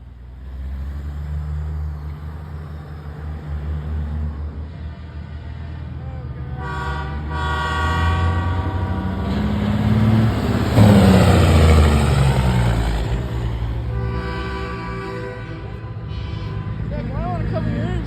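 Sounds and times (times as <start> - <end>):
diesel truck engine passing: 0.0 - 18.0
truck air horn: 4.6 - 17.6.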